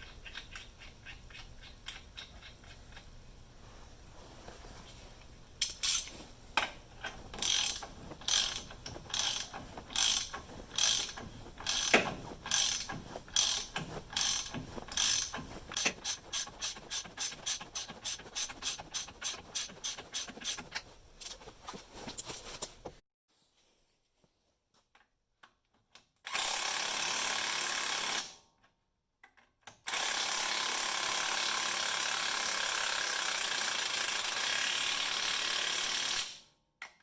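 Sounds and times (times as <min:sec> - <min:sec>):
socket ratchet clicking: 0:07.0 - 0:21.4.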